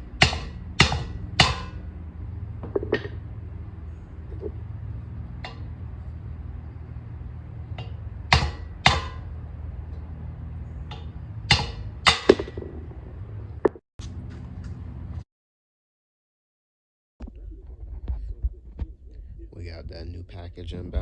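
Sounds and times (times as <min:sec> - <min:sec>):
steady low hum: 0:00.0 - 0:15.2, 0:17.2 - 0:21.0
metal tools clanking on car parts: 0:02.6 - 0:03.2, 0:07.7 - 0:09.3, 0:10.8 - 0:12.9.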